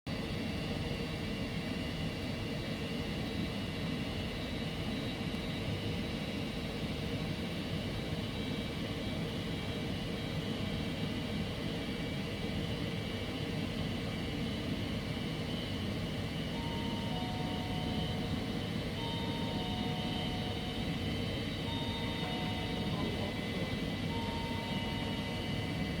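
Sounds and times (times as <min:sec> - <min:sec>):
two-note tone: 0:16.6 - 0:18.4, 0:21.6 - 0:23.4, 0:24.1 - 0:25.6.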